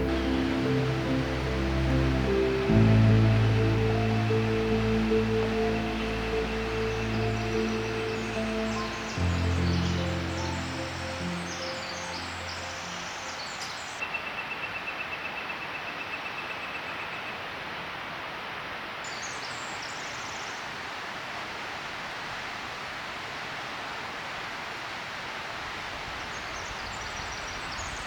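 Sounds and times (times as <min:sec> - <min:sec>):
rushing water: 0:00.0 - 0:14.1, 0:17.4 - 0:28.0
songbird trilling: 0:03.3 - 0:14.6.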